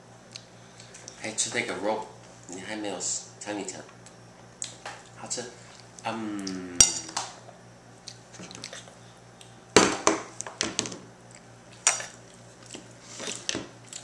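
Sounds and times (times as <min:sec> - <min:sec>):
burp: 0:06.2 - 0:07.2.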